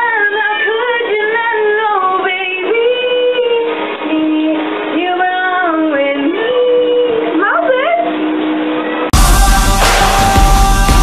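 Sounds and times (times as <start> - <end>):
woman singing long notes: 0.0 - 7.8
pop song: 0.0 - 8.1, 9.1 - 11.0.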